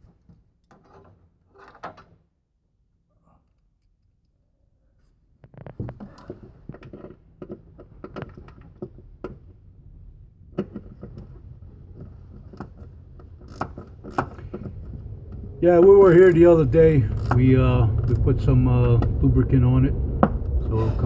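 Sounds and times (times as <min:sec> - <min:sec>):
low rumble: 0:14.4 - 0:21.0.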